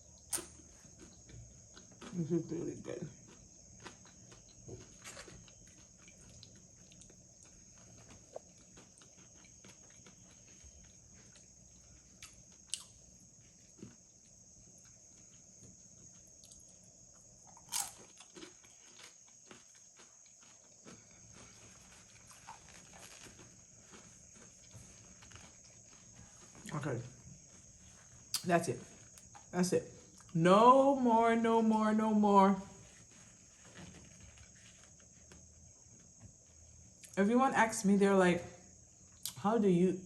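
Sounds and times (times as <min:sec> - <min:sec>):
chewing nachos: 0:00.0 - 0:30.4.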